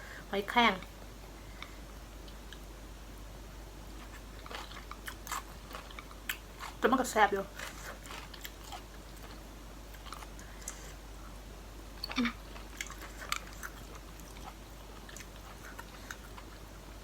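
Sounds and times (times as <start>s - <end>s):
chewing food: 3.8s - 11.4s, 12.0s - 17.0s.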